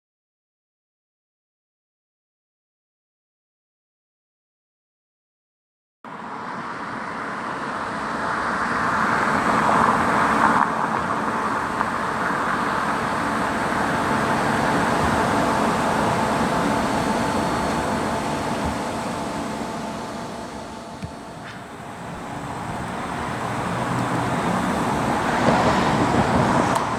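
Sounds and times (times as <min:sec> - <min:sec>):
motor vehicles passing by: 0:06.1 - 0:26.9.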